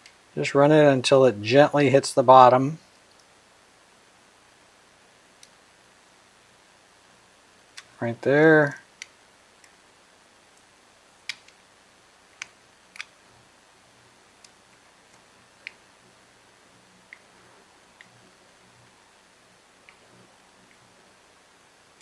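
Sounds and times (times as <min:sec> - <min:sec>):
faint light clicks: 0:02.9 - 0:03.3, 0:09.0 - 0:09.8, 0:10.5 - 0:11.7.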